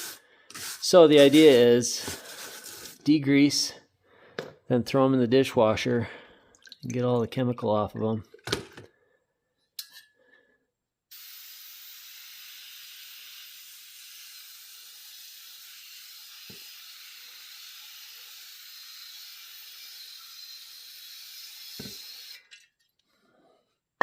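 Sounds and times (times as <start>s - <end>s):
aerosol can spraying: 0.0s - 3.0s, 11.1s - 20.0s.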